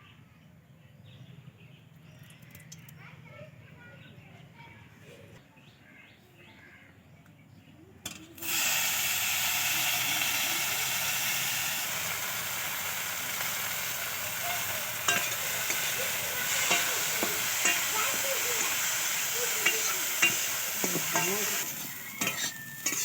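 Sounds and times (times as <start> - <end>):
food sizzling in hot oil: 8.1 - 23.0
spatula clicking in a pan: 10.8 - 23.0.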